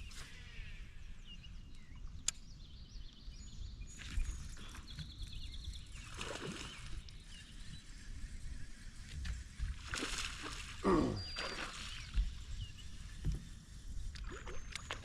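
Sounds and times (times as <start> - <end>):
wind and water rumble: 0.0 - 15.0
birds chirping: 9.8 - 15.0.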